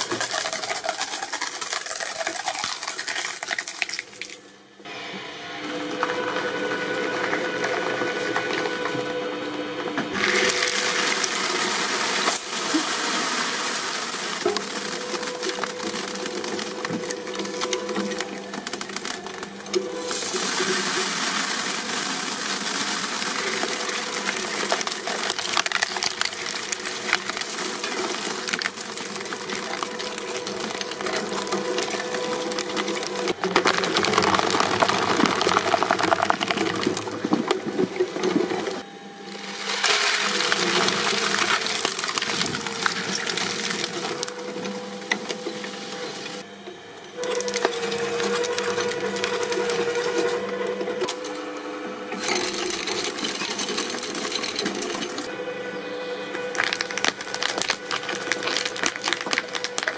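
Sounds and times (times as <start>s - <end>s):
material being crushed and torn: 0.0s - 4.4s, 10.2s - 38.8s, 39.5s - 44.4s, 56.4s - 59.9s
shredding machine humming: 0.0s - 59.9s.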